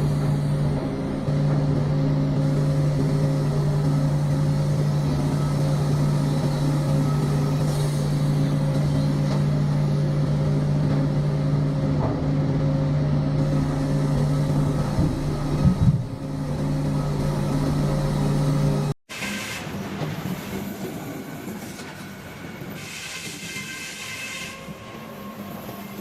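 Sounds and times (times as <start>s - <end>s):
engine low drone: 0.0s - 19.0s.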